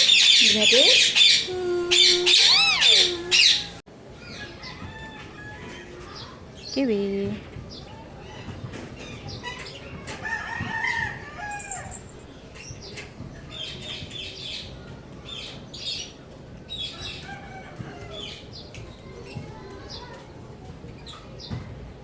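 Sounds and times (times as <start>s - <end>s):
parrot chattering: 0.0s - 3.8s.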